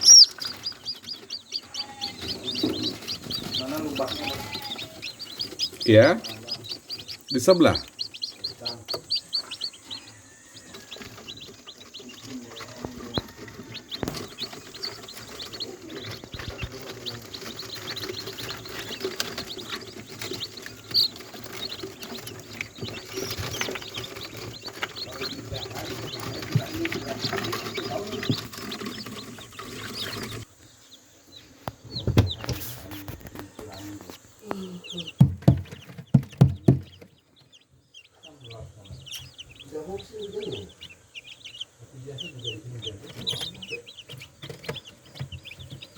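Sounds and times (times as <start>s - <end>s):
clicks and scratching: 0.0s - 9.8s, 10.6s - 30.5s, 42.8s - 45.9s
chickens and chicks peeping: 0.0s - 45.9s
knocks: 35.2s - 37.1s.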